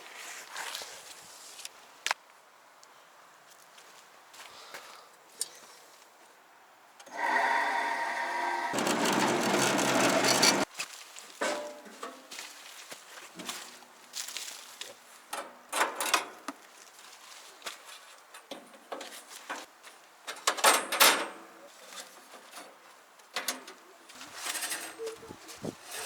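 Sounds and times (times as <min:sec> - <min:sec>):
machine parts clunking and rattling: 0:08.6 - 0:10.7.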